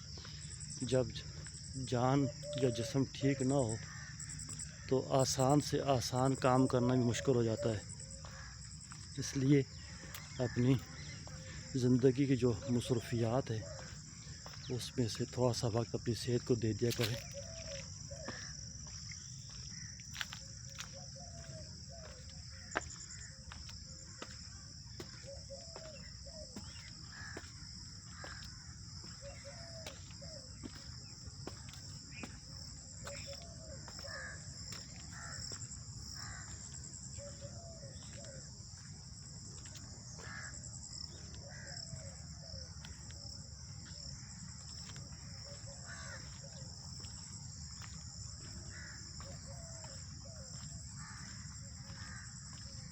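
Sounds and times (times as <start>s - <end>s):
birds calling: 0.0s - 38.5s
insects droning: 0.0s - 52.9s.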